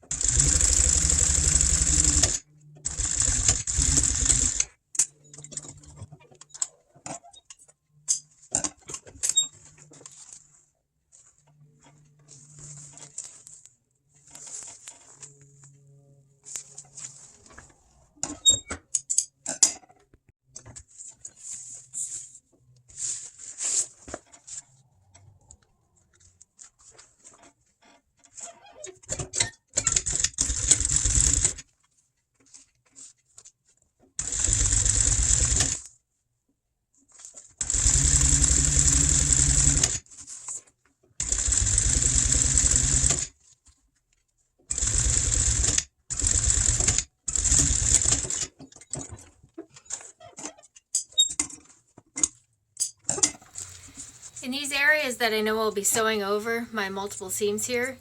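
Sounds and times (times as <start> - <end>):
sewing machine stitching: 0.0 - 7.2, 28.3 - 31.7, 34.2 - 35.9, 37.3 - 40.5, 41.2 - 43.4, 44.7 - 50.5.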